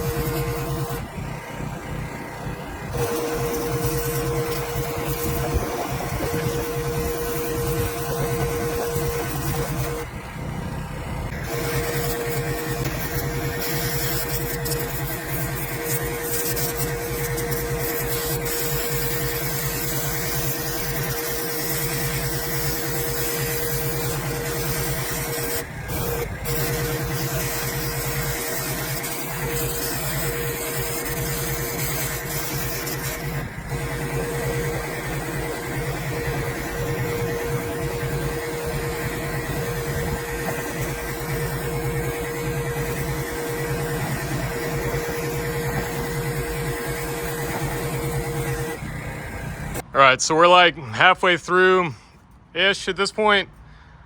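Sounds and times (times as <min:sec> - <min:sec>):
water jet hissing: 0:00.0 - 0:01.2, 0:11.3 - 0:49.8
pressure washer motor humming: 0:00.0 - 0:50.5.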